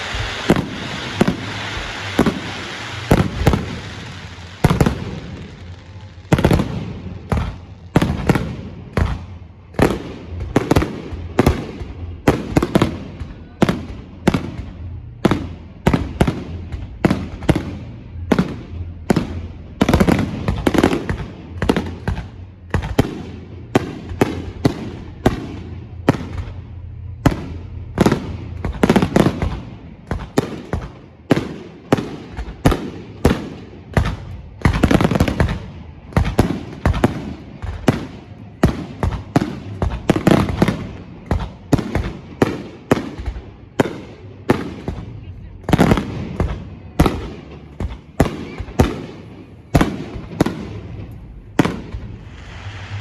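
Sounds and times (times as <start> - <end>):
fireworks shells bursting: 0.0 - 6.7, 49.8 - 53.0.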